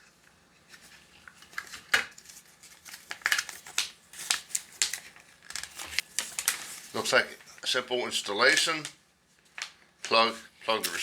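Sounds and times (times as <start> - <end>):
packaging rustling and scraping: 0.6 - 7.2.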